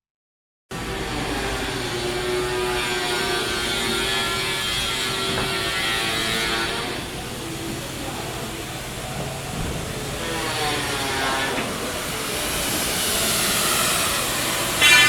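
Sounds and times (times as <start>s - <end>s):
machinery whining tones: 14.6s - 15.0s.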